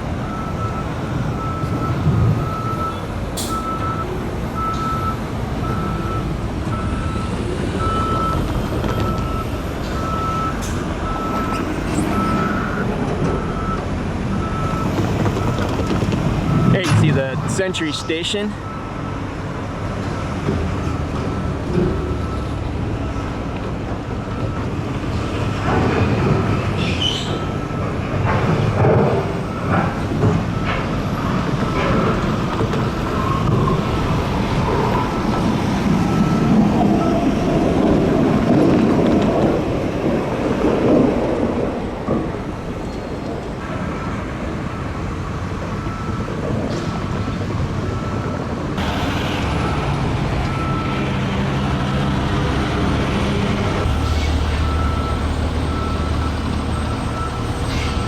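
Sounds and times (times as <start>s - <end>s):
traffic noise: 0.0s - 58.0s
light rail train passing: 16.2s - 58.0s.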